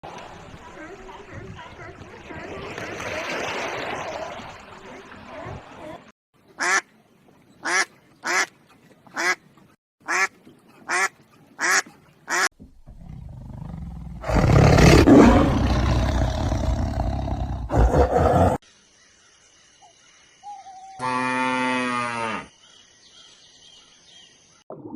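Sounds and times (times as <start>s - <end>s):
duck quacking: 6.6s - 6.8s, 9.1s - 9.4s, 10.0s - 12.5s
large animal roaring: 12.9s - 18.6s.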